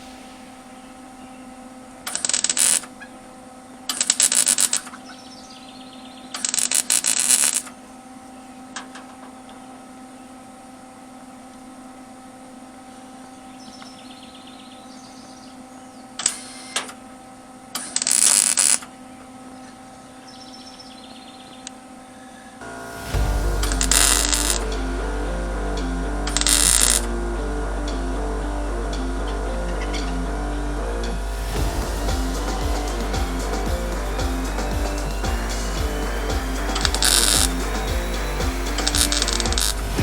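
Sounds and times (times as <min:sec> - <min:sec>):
steady electrical hum: 0:00.0 - 0:40.0
crackling welding arc: 0:02.0 - 0:02.9, 0:22.9 - 0:27.1, 0:31.1 - 0:40.0.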